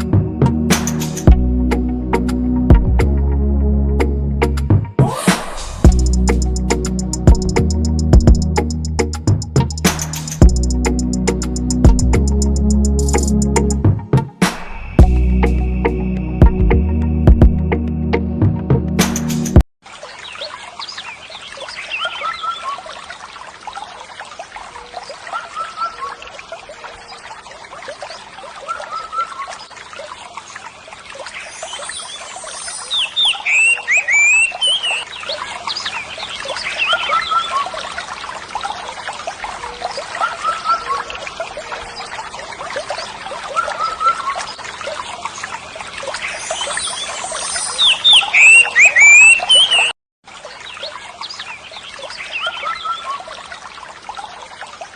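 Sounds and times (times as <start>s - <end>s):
trickling water: 5.5s - 14.3s, 19.8s - 54.9s
short bird chirps: 31.9s - 35.1s, 46.5s - 50.0s.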